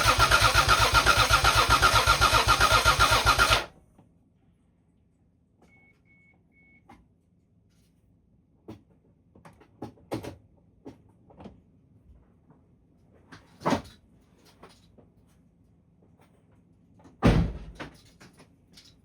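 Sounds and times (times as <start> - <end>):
thump: 17.2 - 17.9.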